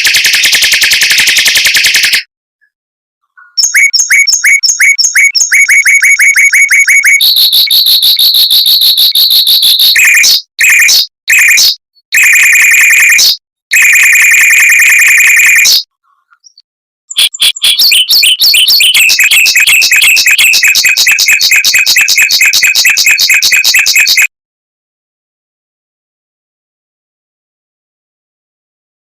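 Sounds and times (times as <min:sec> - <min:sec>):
mockingbird singing: 0:03.2 - 0:13.4, 0:15.3 - 0:24.3.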